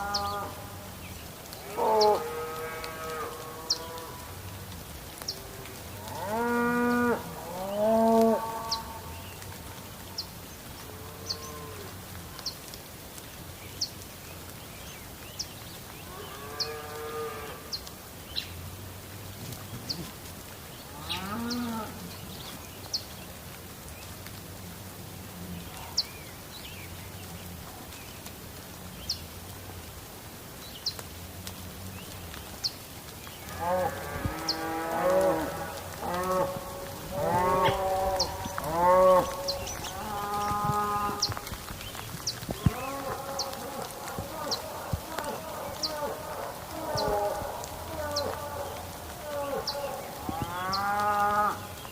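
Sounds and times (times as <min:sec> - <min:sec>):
cattle mooing: 0:33.6 - 0:41.3.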